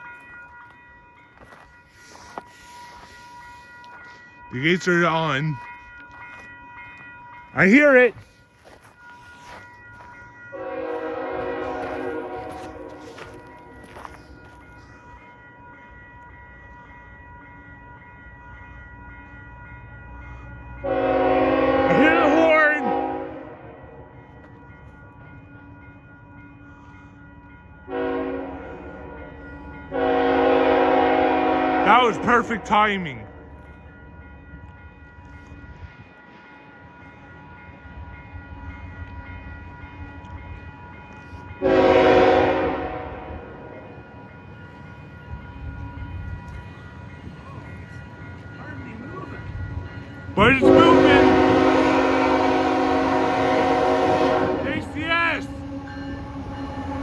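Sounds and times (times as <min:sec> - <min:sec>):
railroad crossing bell ringing: 0:00.0 - 0:57.0
train rumbling: 0:00.0 - 0:57.0
train horn blast: 0:10.5 - 0:13.8, 0:20.8 - 0:23.8, 0:27.9 - 0:29.2, 0:29.9 - 0:32.7, 0:41.6 - 0:43.6, 0:50.4 - 0:57.0
diesel locomotive rumble: 0:37.5 - 0:57.0.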